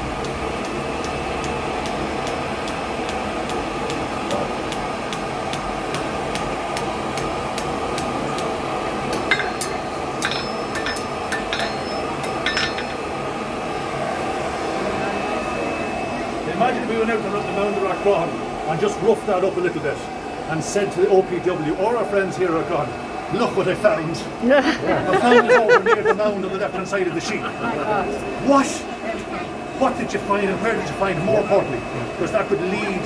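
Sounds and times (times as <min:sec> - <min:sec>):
hammer striking iron on anvil: 0:09.1 - 0:13.0.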